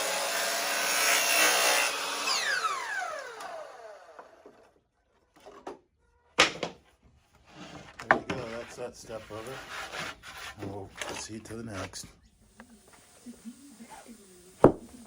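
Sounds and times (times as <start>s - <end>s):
saw motor winding down: 0.0s - 4.6s
power saw cutting wood: 0.0s - 4.7s, 8.0s - 12.0s
wood knocking while handled: 14.6s - 14.9s.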